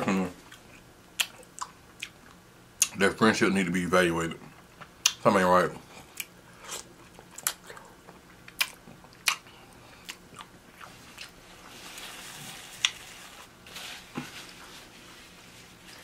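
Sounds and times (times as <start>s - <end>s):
person chewing food: 0.4s - 2.9s, 5.9s - 12.1s.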